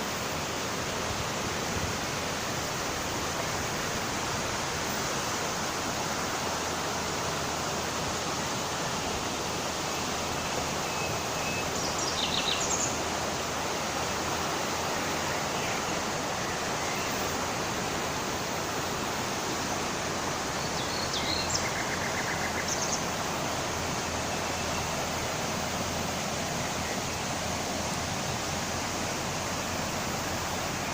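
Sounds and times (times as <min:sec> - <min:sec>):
river water rushing: 0:00.0 - 0:30.9
small birds chirping: 0:10.3 - 0:13.1, 0:20.4 - 0:25.3.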